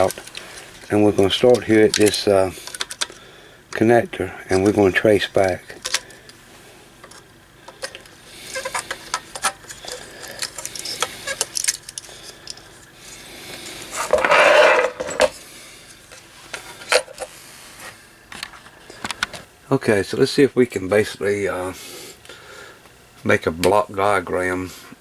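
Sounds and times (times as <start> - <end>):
clicks and clatter of metal parts: 0.0 - 3.8, 5.4 - 6.3, 7.0 - 12.9, 13.6 - 15.4
loud scrape: 13.9 - 15.3.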